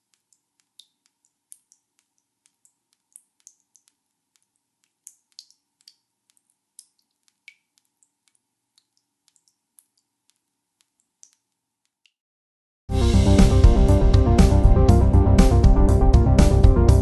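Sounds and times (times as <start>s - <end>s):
water drips plinking: 0.0s - 11.5s
loud music: 12.9s - 17.0s.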